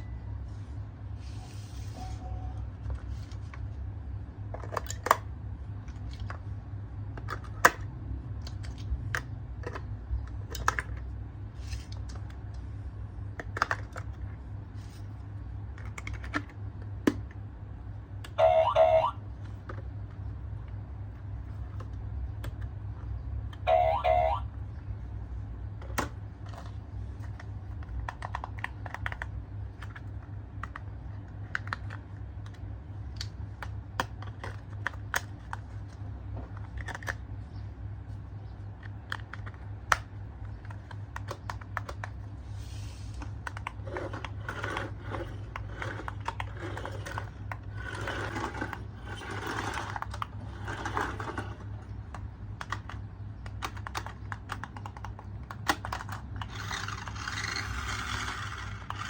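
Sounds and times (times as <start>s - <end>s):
steady low hum: 0.0s - 59.0s
plastic toy parts clicking: 52.1s - 59.0s.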